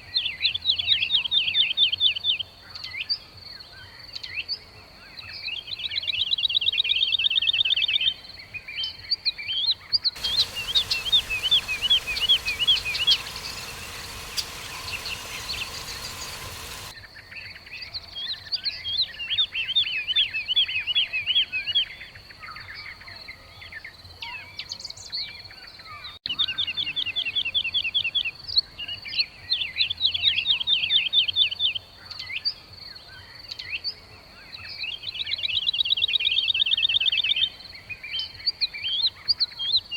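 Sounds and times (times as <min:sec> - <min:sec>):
rushing hiss: 0:10.2 - 0:17.0
weaver birds chattering: 0:10.2 - 0:17.0.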